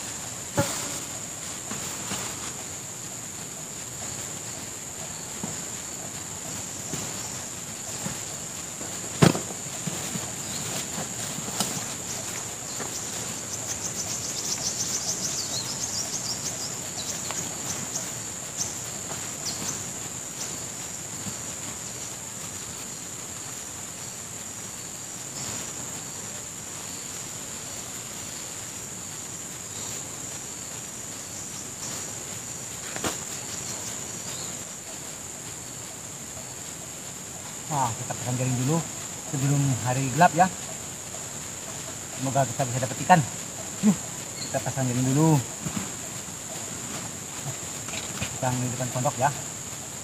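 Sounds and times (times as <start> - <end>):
background hiss: 0.0 - 50.0
insects droning: 0.0 - 50.0
sharp knocks: 9.2 - 9.6
rapid ticks: 9.7 - 21.6.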